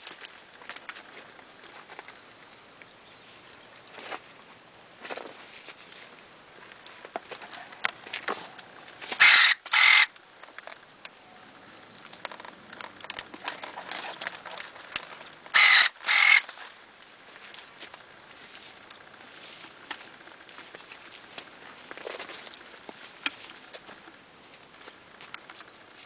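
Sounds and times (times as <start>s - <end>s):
stems clicking and rustling: 0.0s - 26.0s
electric pruning shear whirring: 9.2s - 10.1s, 15.6s - 16.5s.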